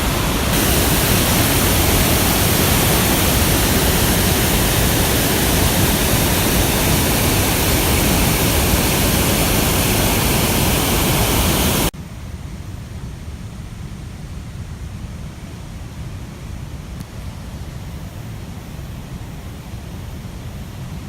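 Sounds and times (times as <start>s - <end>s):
deep rumble of water: 0.0s - 11.9s
flooded river rushing: 0.0s - 11.9s.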